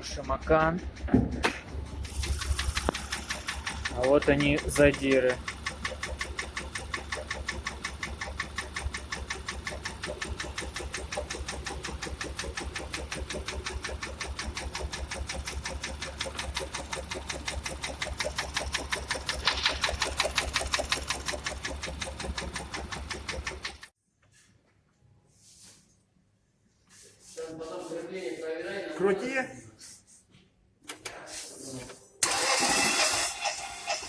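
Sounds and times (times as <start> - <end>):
car engine knocking: 0.0 - 23.9.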